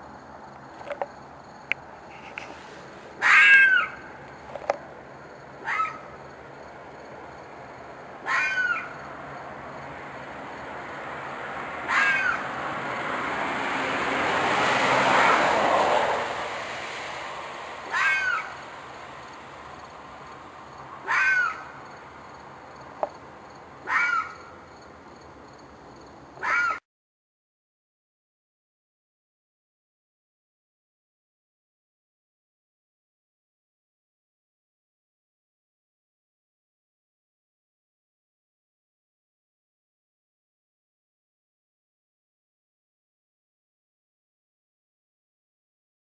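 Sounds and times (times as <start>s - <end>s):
animal screeching scream: 3.2s - 4.1s, 5.6s - 6.1s, 8.2s - 9.0s, 11.9s - 12.5s, 17.8s - 18.6s, 21.0s - 21.8s, 23.8s - 24.4s, 26.4s - 26.8s.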